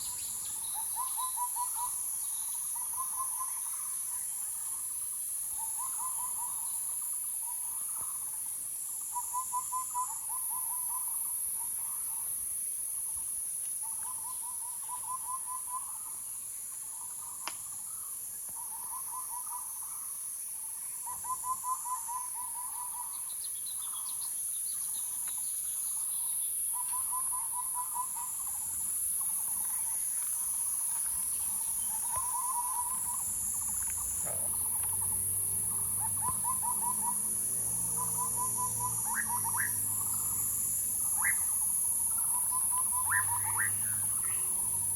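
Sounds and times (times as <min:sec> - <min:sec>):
high-pitched insect chorus: 0:00.0 - 0:44.9
bird trilling: 0:31.8 - 0:44.9.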